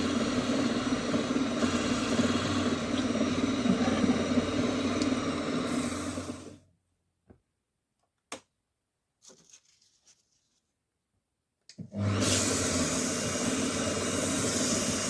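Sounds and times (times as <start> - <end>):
wood lathe running: 0.0 - 6.5.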